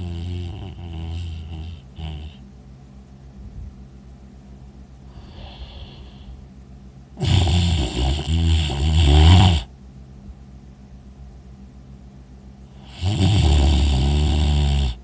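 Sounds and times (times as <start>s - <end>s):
man snoring: 0.0s - 2.4s, 5.1s - 6.3s, 7.2s - 9.7s, 12.8s - 15.0s
faint breath: 5.0s - 6.5s.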